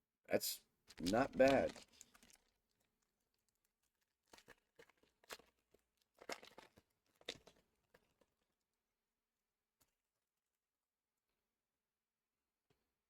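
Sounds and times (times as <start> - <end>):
cards and foil packaging crinkling: 1.0 - 2.5.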